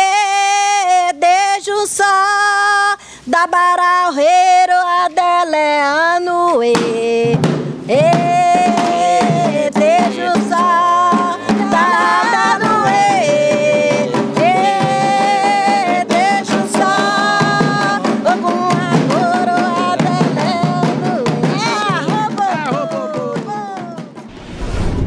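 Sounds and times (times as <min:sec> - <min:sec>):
drum strikes: 0:06.7 - 0:24.3.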